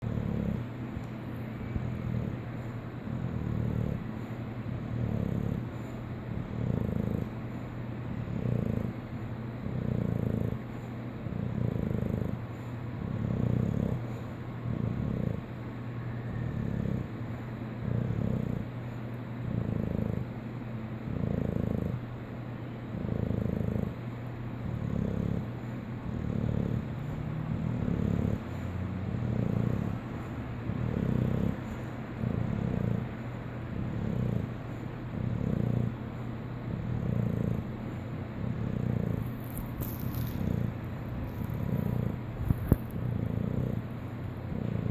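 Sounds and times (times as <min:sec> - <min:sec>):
rhythmic snoring: 0:00.0 - 0:44.9.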